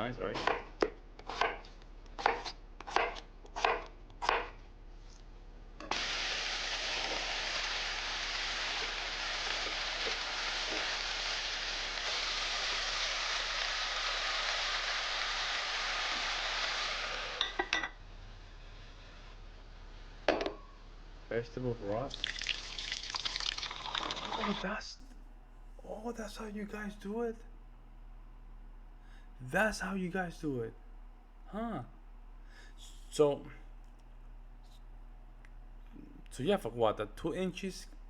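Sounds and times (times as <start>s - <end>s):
knife chopping on cutting board: 0.3s - 4.6s
food sizzling in a pan: 5.8s - 17.7s, 22.1s - 24.7s.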